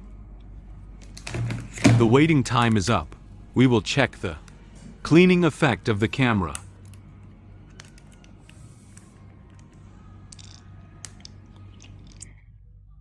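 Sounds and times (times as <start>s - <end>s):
steady low hum: 0.0s - 13.0s
phone handling clicks and rustling: 1.0s - 3.2s, 7.7s - 8.6s.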